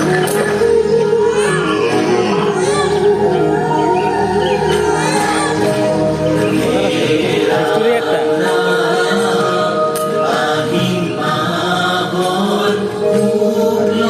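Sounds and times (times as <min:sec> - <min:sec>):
group of voices chanting and singing: 0:00.0 - 0:14.0
sustained instrumental notes: 0:00.0 - 0:14.0.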